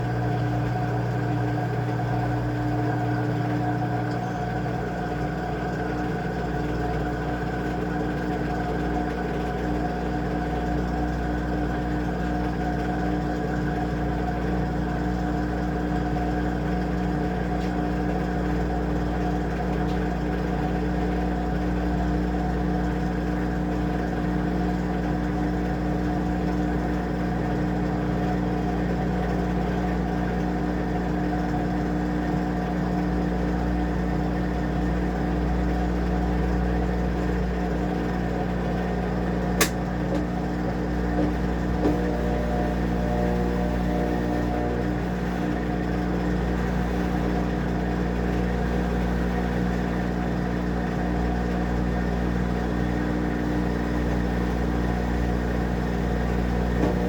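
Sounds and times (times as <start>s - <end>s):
washing machine motor hum: 0.0s - 57.0s
sharp click: 39.6s - 39.8s.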